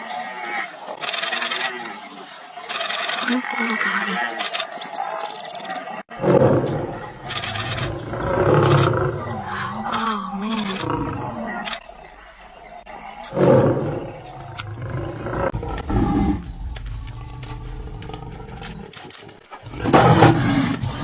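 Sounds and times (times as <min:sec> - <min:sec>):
large animal roaring: 0:06.1 - 0:21.0
wavering growl: 0:06.1 - 0:21.0.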